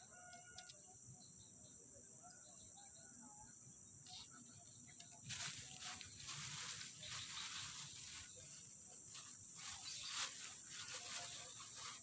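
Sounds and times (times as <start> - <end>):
high-pitched insect buzz: 3.9 - 12.0
brief rustle: 5.1 - 12.0.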